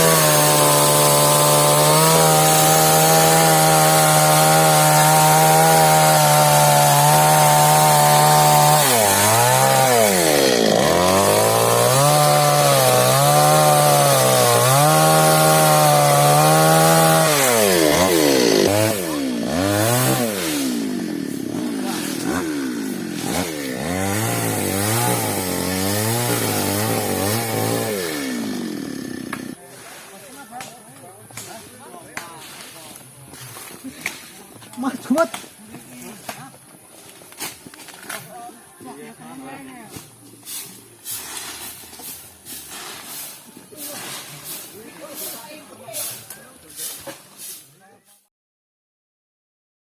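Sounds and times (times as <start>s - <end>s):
chainsaw cutting wood: 0.0s - 29.6s.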